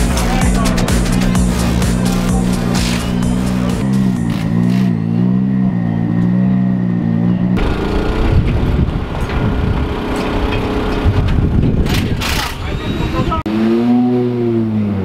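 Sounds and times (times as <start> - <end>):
electronic music with bass line: 0.0 - 5.6
car engine running: 0.0 - 12.2.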